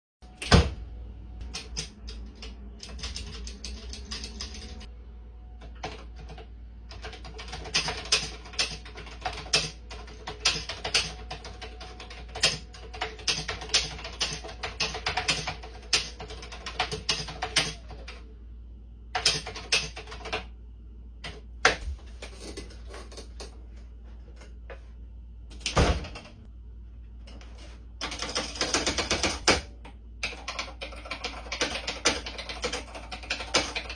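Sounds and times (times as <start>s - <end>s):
faint steady hum: 0.2s - 33.9s
rapid clacking keystrokes: 1.4s - 4.9s, 5.6s - 18.2s, 19.2s - 20.4s, 28.0s - 33.9s.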